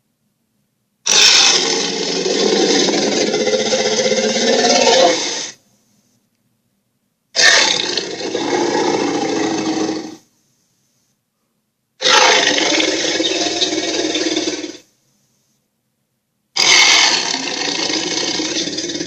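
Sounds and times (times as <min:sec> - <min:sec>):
toy roaring through small speaker: 0:01.2 - 0:05.5.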